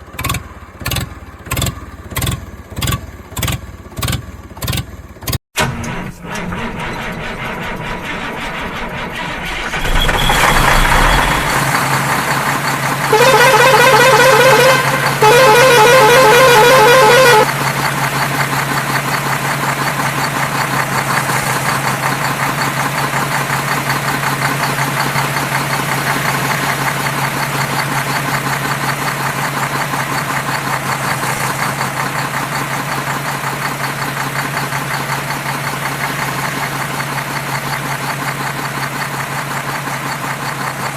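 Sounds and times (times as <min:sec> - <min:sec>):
engine running: 0:00.0 - 0:40.9
engine starting: 0:00.0 - 0:40.9
vehicle horn warbling blasts: 0:13.1 - 0:17.5.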